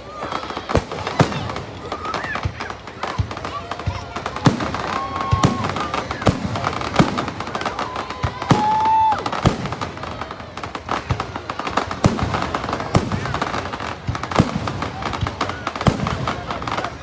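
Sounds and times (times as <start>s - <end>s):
fireworks bangs and crackles: 0.0s - 17.0s
firework whistle: 4.4s - 10.4s.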